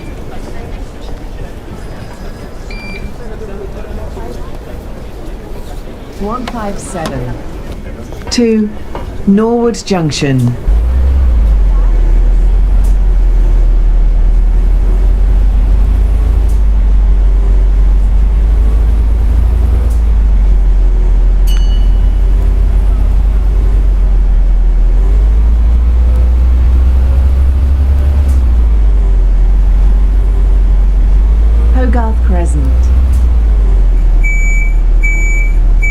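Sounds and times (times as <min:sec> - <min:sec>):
bus engine rumbling: 0:00.0 - 0:35.9
short high ding: 0:21.4 - 0:22.2.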